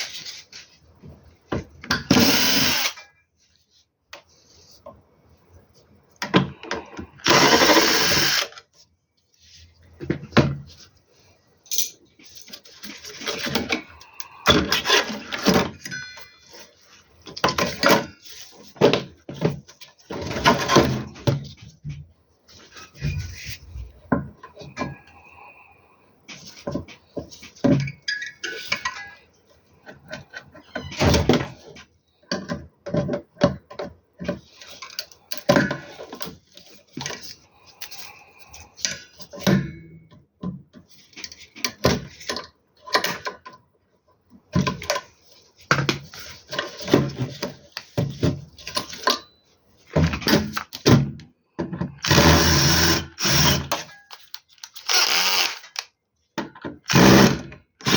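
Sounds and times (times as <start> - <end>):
power screwdriver running: 2.1 - 3.0, 7.3 - 8.6, 52.0 - 53.8, 54.7 - 55.8, 56.9 - 57.9.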